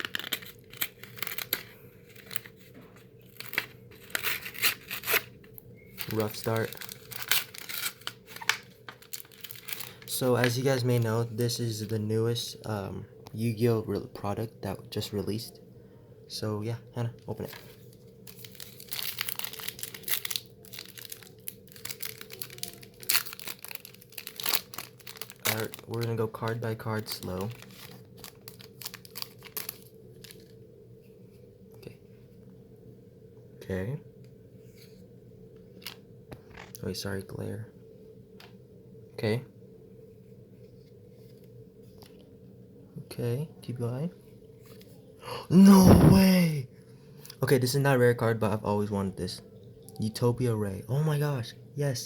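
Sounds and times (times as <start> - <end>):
packaging being torn open: 0.0 - 1.6, 6.0 - 10.1, 18.2 - 30.5.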